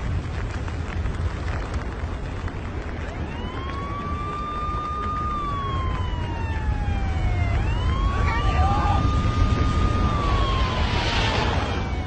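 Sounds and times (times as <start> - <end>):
steady low rumble: 0.0 - 12.0
siren wailing: 2.9 - 12.0.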